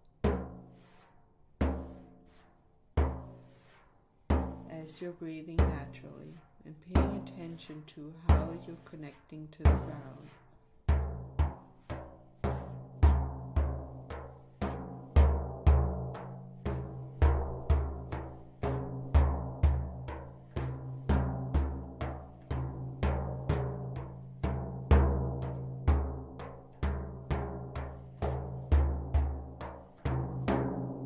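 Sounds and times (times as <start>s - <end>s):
deep drum beating: 6.9s - 7.6s, 8.2s - 8.8s, 10.9s - 31.0s.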